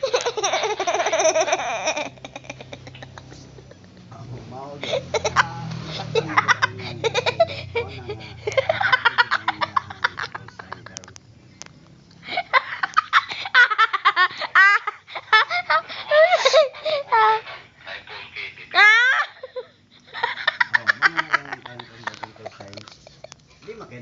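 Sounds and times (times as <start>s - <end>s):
laughter in rapid bursts: 0.0s - 4.2s, 4.8s - 11.1s, 12.3s - 17.4s, 18.0s - 23.4s.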